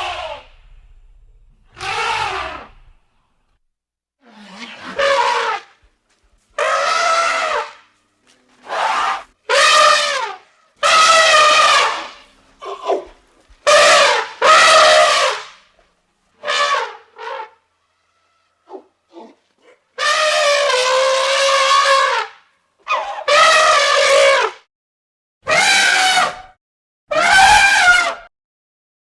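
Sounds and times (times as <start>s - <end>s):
elephant trumpeting: 0.0s - 0.8s, 1.6s - 3.0s, 4.2s - 5.8s, 6.6s - 7.8s, 8.6s - 15.6s, 16.4s - 18.9s, 20.0s - 24.6s, 25.5s - 26.4s, 27.1s - 28.2s.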